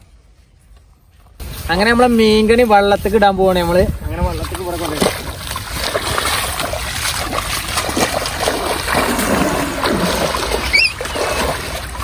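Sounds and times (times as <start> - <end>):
river water splashing and trickling: 0.0 - 12.0.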